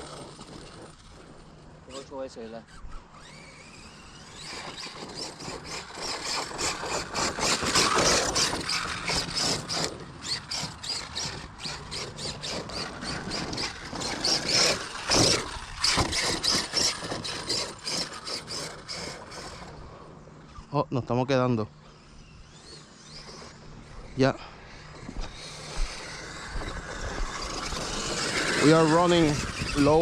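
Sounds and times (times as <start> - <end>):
electric motor whine: 0.0 - 30.0
tyres crunching dirt: 2.1 - 20.6.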